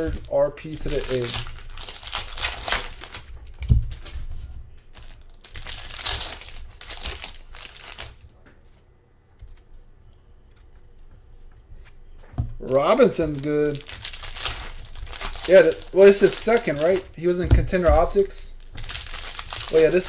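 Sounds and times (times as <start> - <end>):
plastic wrappers crinkling: 0.0 - 8.4, 12.6 - 20.0.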